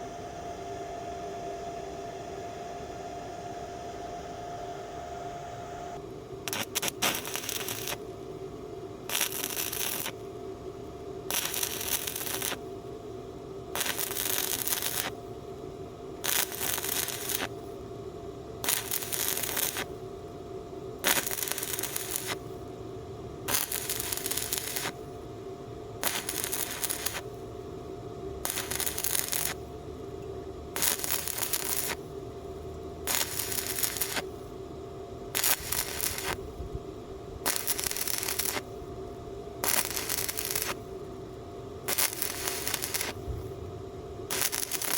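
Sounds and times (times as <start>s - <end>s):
steady hum: 0.0s - 44.9s
welder arc crackle: 6.4s - 8.3s, 9.0s - 10.4s, 11.1s - 12.8s, 13.7s - 15.4s, 16.2s - 17.9s, 18.6s - 20.1s, 21.0s - 22.6s, 23.4s - 25.2s, 26.0s - 27.4s, 28.3s - 29.8s, 30.8s - 34.6s, 35.3s - 36.6s, 37.4s - 39.0s, 39.6s - 41.2s, 41.8s - 44.9s.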